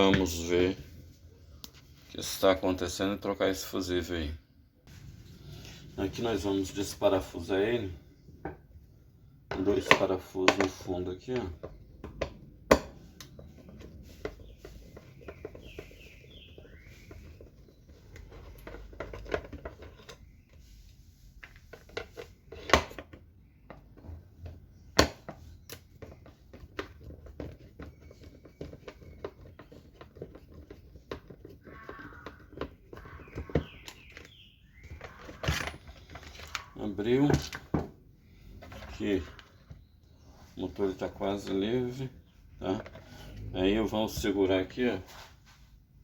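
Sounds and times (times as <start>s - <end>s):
bird chirping: 10.6s - 20.8s, 22.3s - 45.0s.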